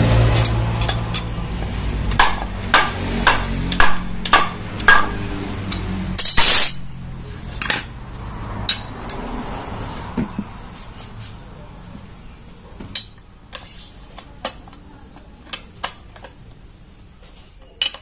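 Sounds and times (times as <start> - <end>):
hammer striking metal: 2.1 - 7.1.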